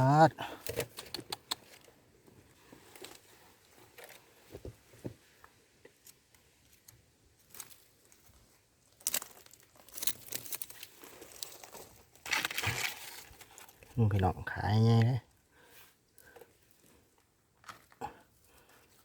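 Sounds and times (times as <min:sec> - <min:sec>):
dry leaves crackling and rustling: 0:07.4 - 0:13.6.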